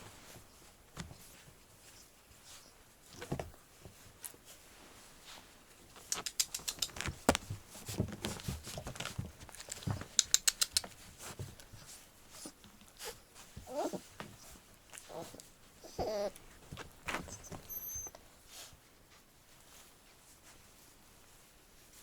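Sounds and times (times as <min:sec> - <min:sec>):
puppy claws ticking: 0:06.0 - 0:07.5, 0:09.4 - 0:11.1.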